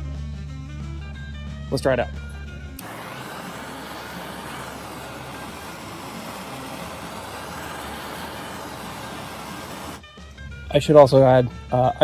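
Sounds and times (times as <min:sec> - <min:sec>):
gas torch hissing: 0:02.8 - 0:10.2.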